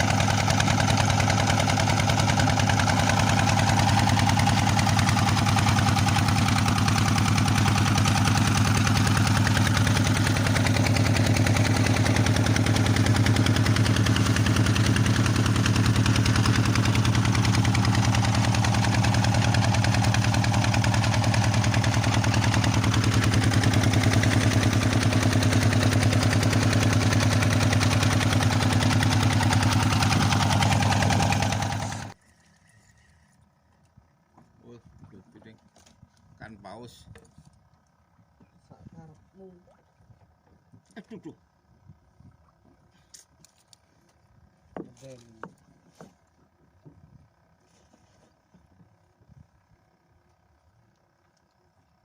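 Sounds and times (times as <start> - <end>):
boat engine pulsing: 0.0 - 32.2.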